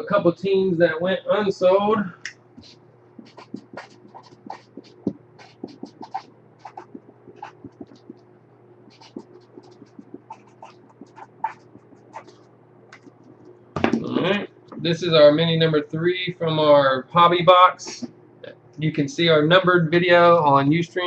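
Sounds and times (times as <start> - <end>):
low electrical hum: 0.0 - 21.0.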